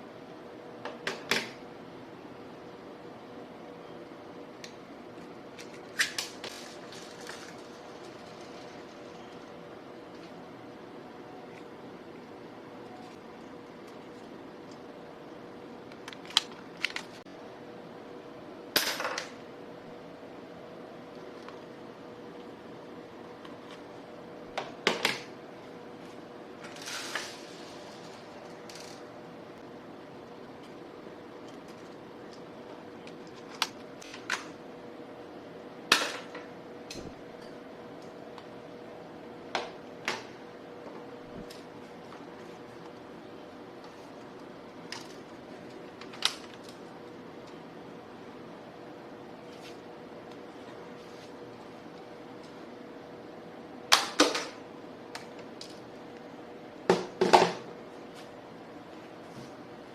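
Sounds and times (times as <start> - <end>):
faint steady hum: 0.0 - 59.9.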